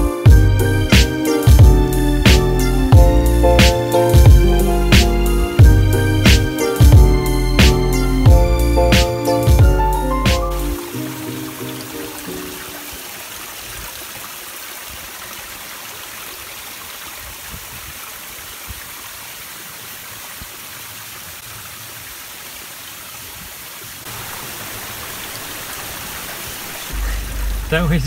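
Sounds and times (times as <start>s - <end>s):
music track: 0.0s - 13.0s.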